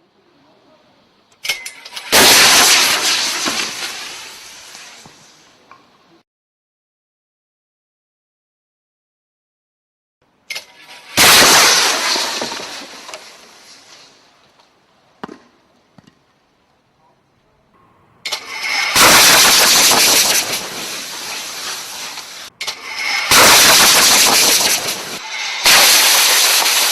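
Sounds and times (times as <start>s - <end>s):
loud gas blast: 1.8s - 5.4s, 10.6s - 14.2s, 17.8s - 26.9s
gas hissing from cylinder: 18.3s - 26.9s.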